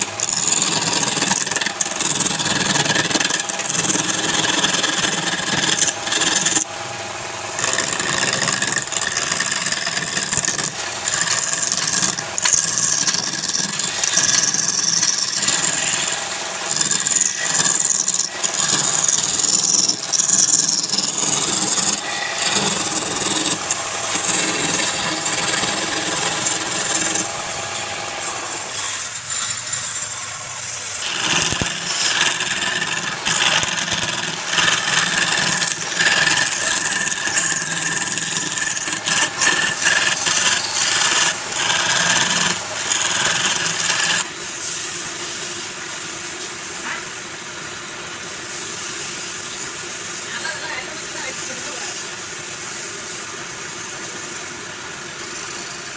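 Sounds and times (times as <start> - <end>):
turning tool cutting wood: 0.0 - 44.4
lathe motor hum: 0.0 - 44.5.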